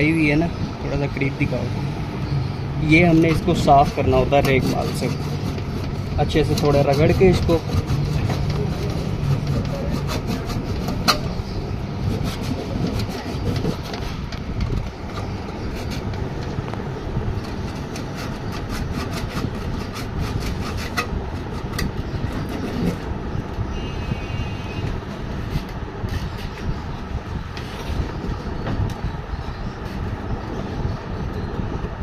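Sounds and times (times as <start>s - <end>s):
sandpaper scrubbing: 2.8s - 14.2s.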